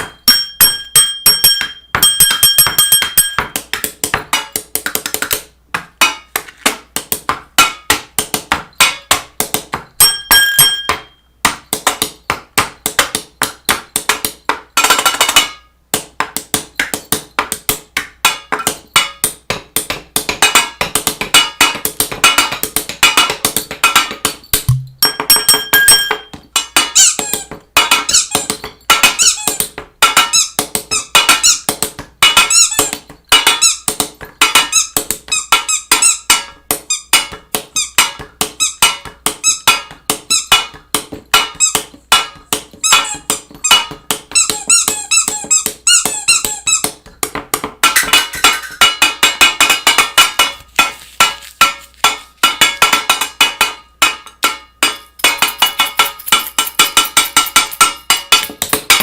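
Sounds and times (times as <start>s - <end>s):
short high squeaks: 36.9s - 37.2s, 37.8s - 38.0s, 39.4s - 39.7s, 41.6s - 41.8s, 42.8s - 46.9s.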